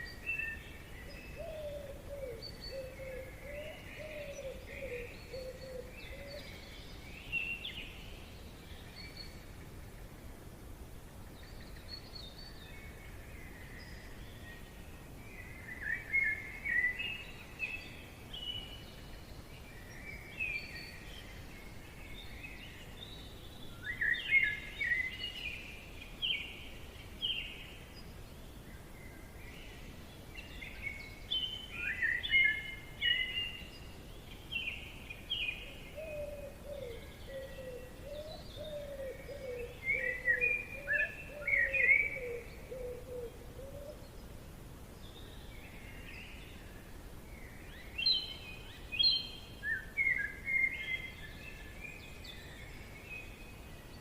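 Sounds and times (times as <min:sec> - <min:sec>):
faint background hiss: 0:00.0 - 0:54.0
songbirds chirping: 0:00.0 - 0:54.0.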